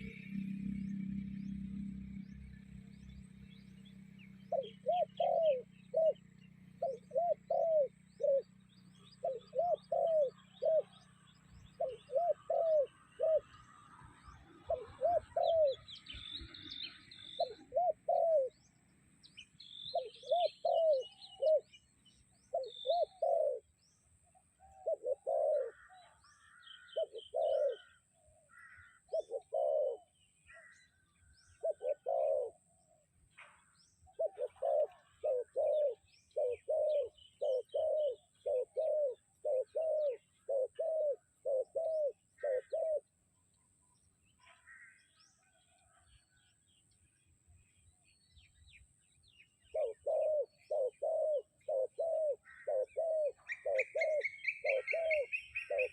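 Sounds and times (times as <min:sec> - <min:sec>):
bird calling with low notes: 0:00.0 - 0:55.9
higher bird chirps: 0:19.3 - 0:32.6, 0:33.6 - 0:45.8, 0:48.2 - 0:55.9.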